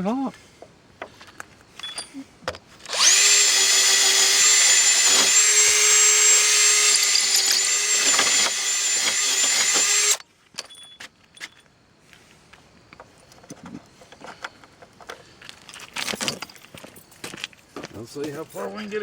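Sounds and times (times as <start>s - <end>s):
battery drill drilling into concrete: 2.9s - 10.2s.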